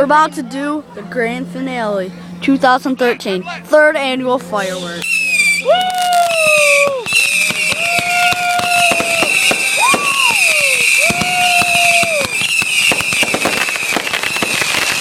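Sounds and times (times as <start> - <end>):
high shriek: 4.6 - 14.4
fireworks whistles: 4.6 - 15.0
fireworks crackling and popping: 4.9 - 15.0.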